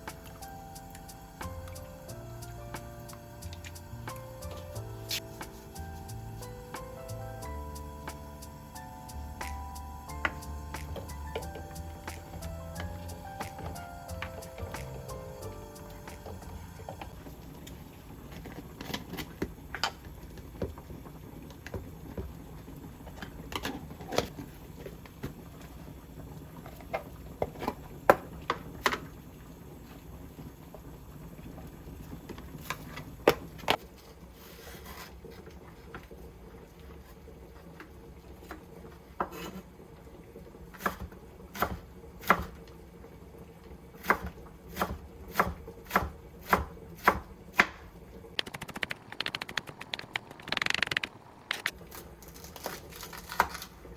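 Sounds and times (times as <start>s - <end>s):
knife chopping on cutting board: 40.8s - 42.6s, 44.0s - 47.8s.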